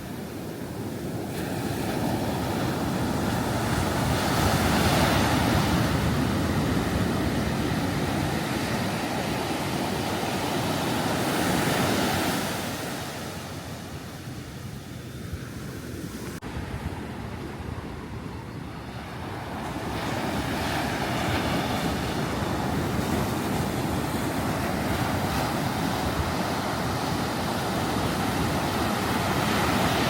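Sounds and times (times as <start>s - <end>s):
waves breaking on a beach: 0.0s - 30.0s.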